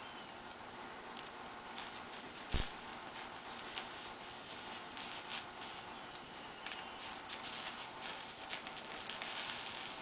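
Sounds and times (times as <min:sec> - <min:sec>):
soldering ticks and clicks: 0:00.4 - 0:03.5.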